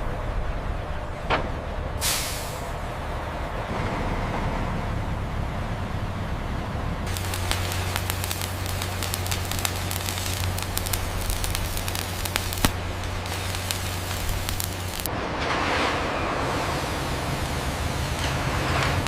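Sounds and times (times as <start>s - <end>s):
hiss: 2.0s - 2.8s, 7.1s - 15.1s, 16.6s - 19.0s
steady low hum: 5.8s - 15.1s
dense crackling: 7.0s - 15.1s, 16.4s - 19.0s
sharp crack: 7.1s - 15.1s, 16.5s - 19.0s.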